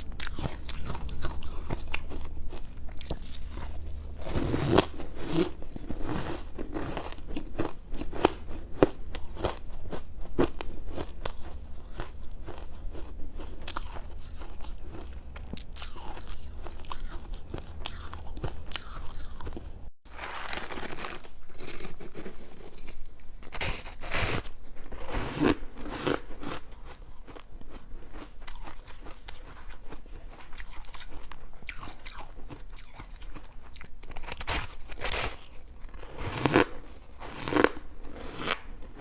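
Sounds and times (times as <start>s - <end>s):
person crunching ice: 20.1s - 24.4s, 34.0s - 39.0s.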